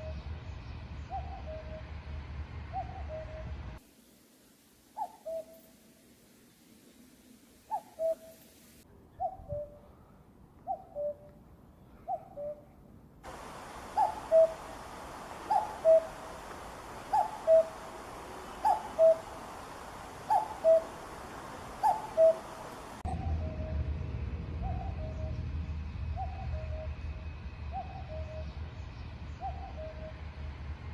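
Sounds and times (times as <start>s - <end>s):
background hiss: 3.8s - 8.9s, 13.2s - 23.1s
cuckoo calling: 5.0s - 5.7s, 7.6s - 8.5s, 10.6s - 11.3s, 13.3s - 23.6s.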